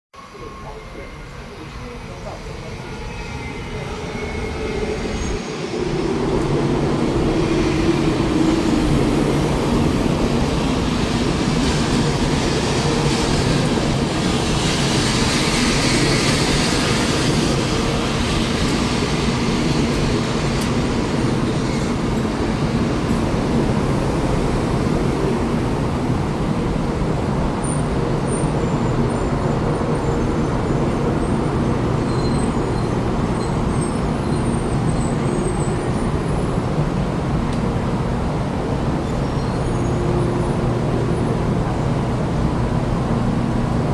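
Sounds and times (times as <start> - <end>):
train rumbling past: 0.2 - 43.9
train hiss: 0.3 - 27.5.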